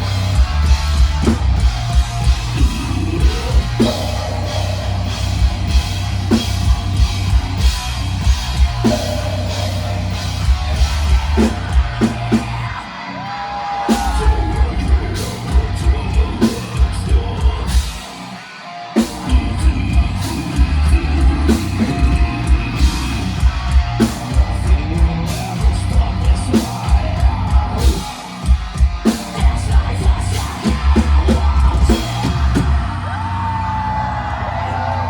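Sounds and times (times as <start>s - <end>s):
heavy distorted guitars: 0.0s - 35.0s
pounding drum kit: 0.0s - 35.0s
yelled vocals: 0.0s - 35.0s.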